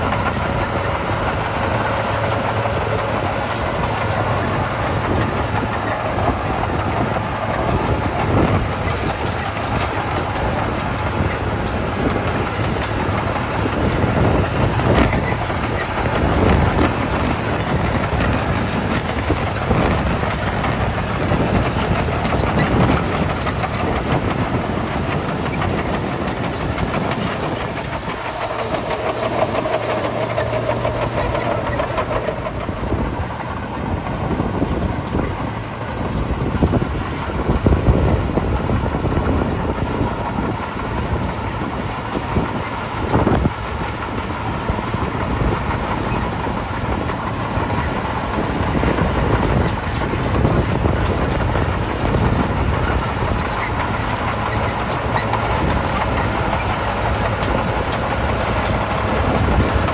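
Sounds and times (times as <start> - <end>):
tracks and blade rattling: 0.0 - 37.8
bulldozer diesel engine: 0.0 - 59.9.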